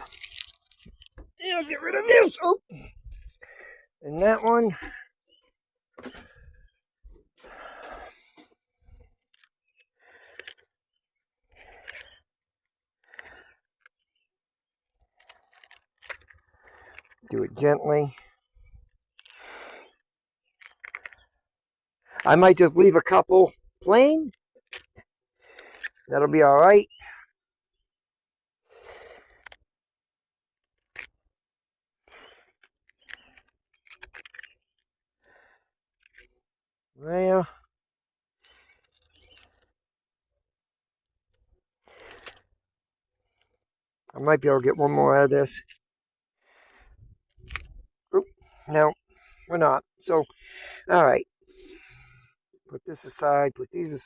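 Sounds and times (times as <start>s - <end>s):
onion layers being peeled: 0.0s - 1.2s.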